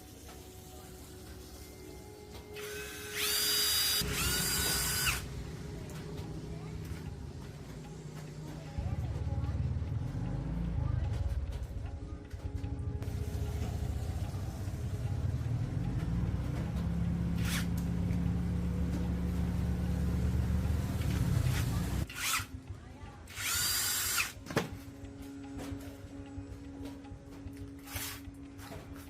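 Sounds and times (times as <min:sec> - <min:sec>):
electric power tool humming: 0:02.5 - 0:05.3, 0:23.3 - 0:24.4.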